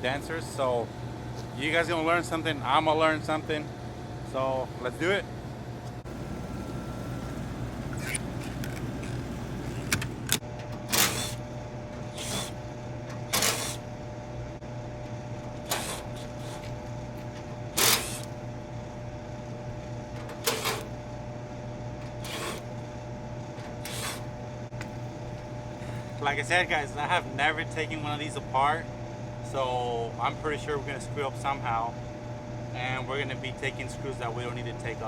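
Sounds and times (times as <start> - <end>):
steady low hum: 0.0 - 35.0
cordless driver backing out screws: 17.8 - 18.3.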